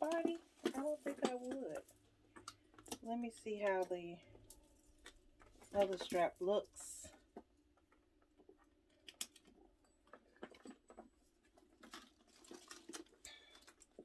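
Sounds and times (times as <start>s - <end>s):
leather rustling: 8.4s - 14.0s.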